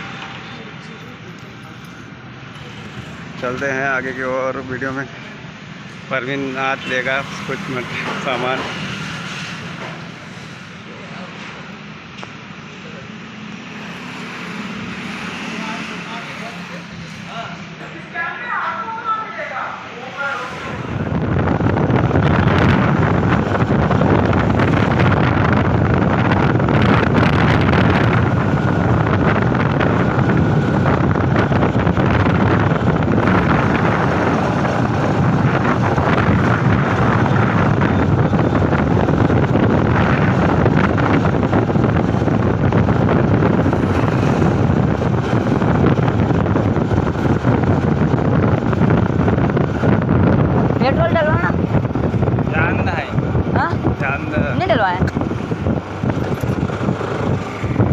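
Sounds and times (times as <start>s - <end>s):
road noise: 0.0s - 57.9s
wind roaring over microphone: 1.9s - 12.4s, 13.6s - 57.9s
motorcycle engine: 55.0s - 57.9s.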